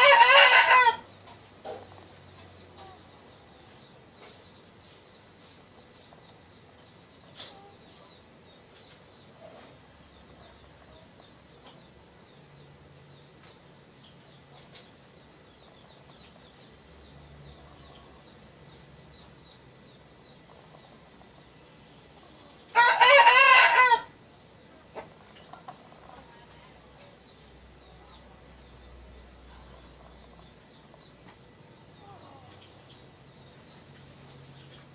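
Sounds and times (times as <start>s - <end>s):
rooster crowing: 0.0s - 1.1s, 22.7s - 24.2s
small birds chirping: 0.0s - 34.9s.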